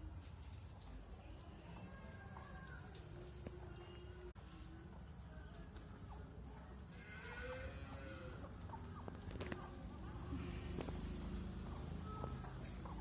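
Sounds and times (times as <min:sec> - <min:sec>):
chickens clucking: 0:04.5 - 0:13.0.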